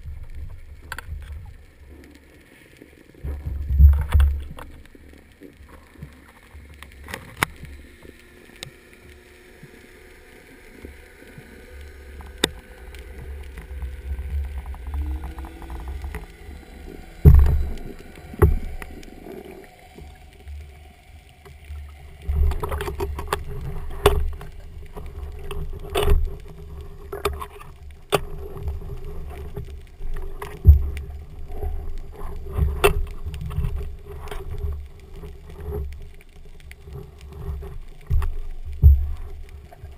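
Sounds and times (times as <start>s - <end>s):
muffled underwater rumble: 0.0s - 39.9s
steady hum: 5.9s - 39.9s.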